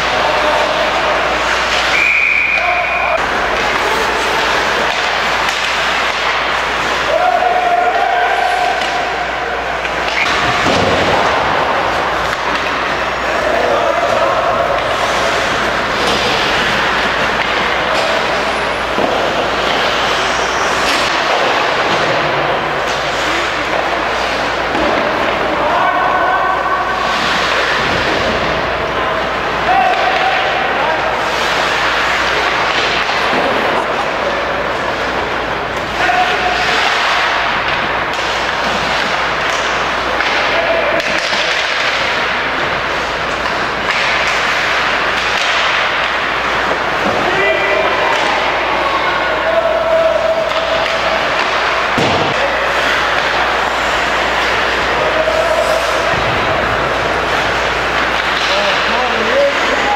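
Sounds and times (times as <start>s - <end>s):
hockey sticks and puck knocks: 0.0s - 59.9s
skates scraping ice: 0.0s - 59.9s
skate blades scraping ice: 50.2s - 59.9s.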